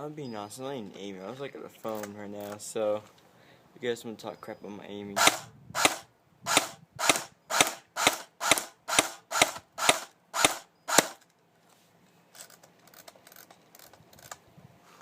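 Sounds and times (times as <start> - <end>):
airsoft rifle sharp pops: 5.2 - 11.2.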